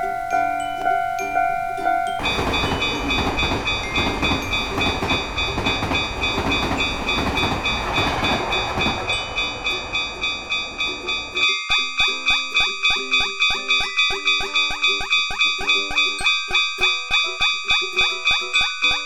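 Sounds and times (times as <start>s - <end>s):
dense rumbling noise: 2.2s - 11.4s.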